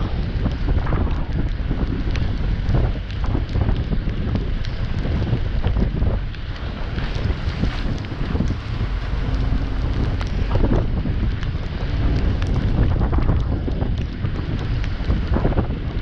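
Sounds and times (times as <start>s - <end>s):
wind buffeting microphone: 0.0s - 16.0s
heavy logging equipment rumbling: 5.9s - 15.2s.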